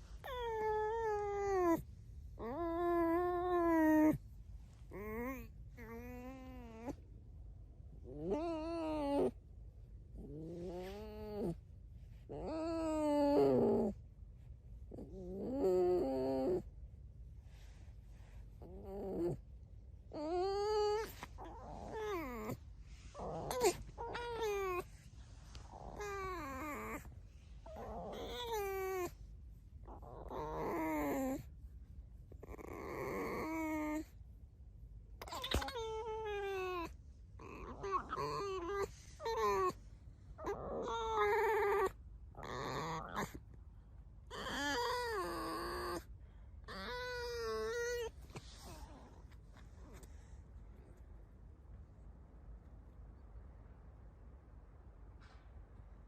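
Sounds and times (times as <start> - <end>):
fox squeaking: 35.2 - 39.8, 46.7 - 48.2.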